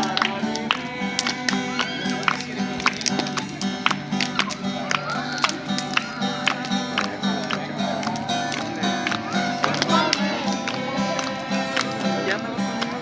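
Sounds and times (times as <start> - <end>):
people singing a hymn: 0.0 - 3.4, 6.2 - 13.0
acoustic guitar strumming: 0.0 - 13.0.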